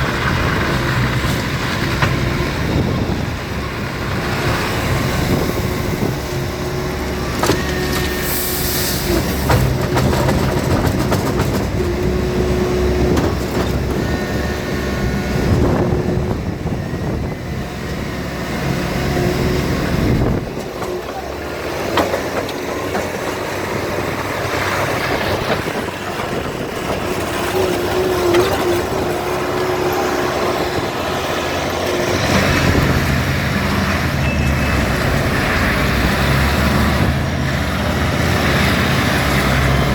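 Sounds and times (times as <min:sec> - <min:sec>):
diesel engine droning: 0:00.0 - 0:39.9
high engine whine: 0:00.0 - 0:39.9.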